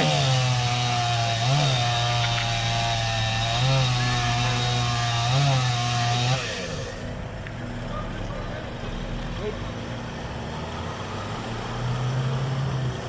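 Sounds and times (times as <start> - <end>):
chainsaw cutting into tree: 0.0 - 7.0.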